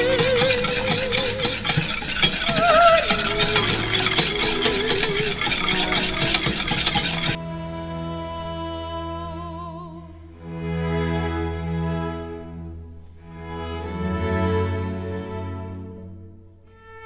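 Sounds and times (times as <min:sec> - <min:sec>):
utensil scraping a saucepan: 0:00.0 - 0:07.4.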